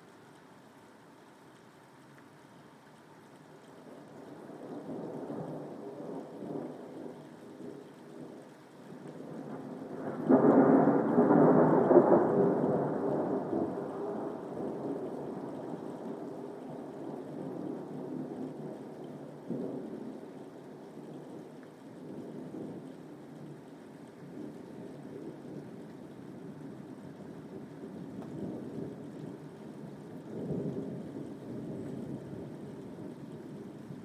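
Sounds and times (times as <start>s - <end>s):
steady rain: 0.0s - 34.0s
thunder rumbling: 4.3s - 23.2s.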